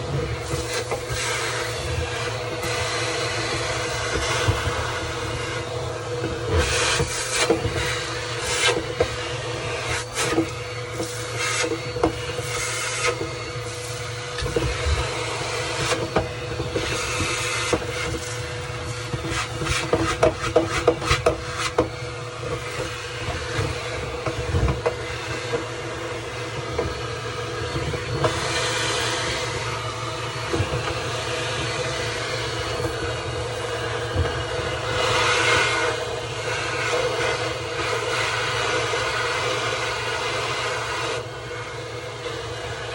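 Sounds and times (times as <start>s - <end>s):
nozzle scraping and clicking: 0.0s - 27.1s
vacuum cleaner running: 0.0s - 42.9s.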